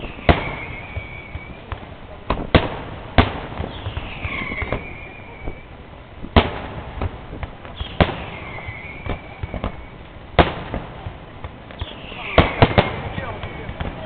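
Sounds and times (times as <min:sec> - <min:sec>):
firework whistle falling in pitch: 0:00.0 - 0:01.7, 0:03.6 - 0:05.7, 0:07.8 - 0:10.0
firework pops: 0:00.0 - 0:14.0
firework shells bursting: 0:00.0 - 0:14.0.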